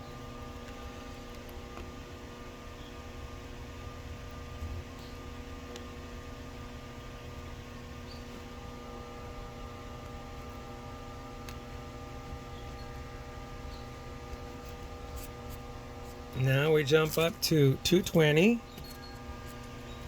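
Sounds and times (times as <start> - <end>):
electrical hum: 0.0 - 20.0.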